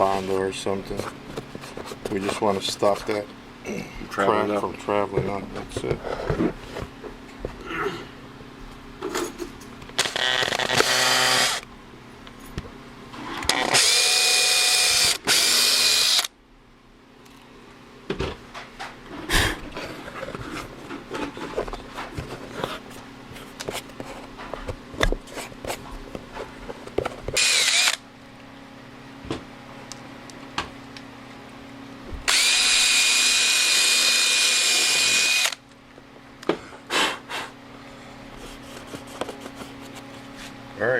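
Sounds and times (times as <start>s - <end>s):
power drill running: 10.0s - 11.6s, 13.5s - 16.3s, 27.4s - 28.0s, 32.3s - 35.6s.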